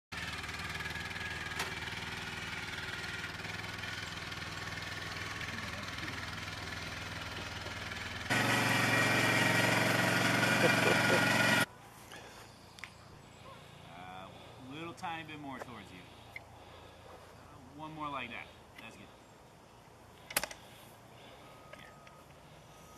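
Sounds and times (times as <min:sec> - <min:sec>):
engine idling: 0:00.2 - 0:11.7.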